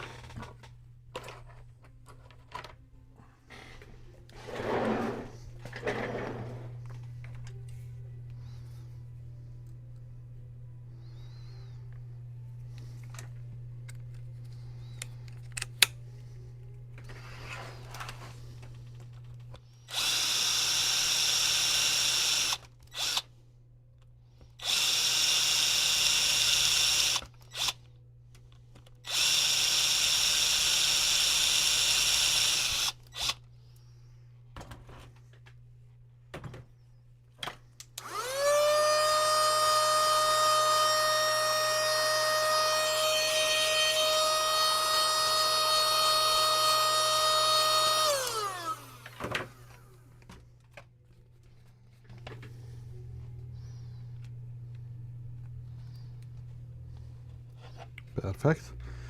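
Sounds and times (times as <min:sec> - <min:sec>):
power tool whining: 0:19.9 - 0:23.2, 0:24.6 - 0:27.8, 0:29.0 - 0:33.4, 0:38.0 - 0:49.9.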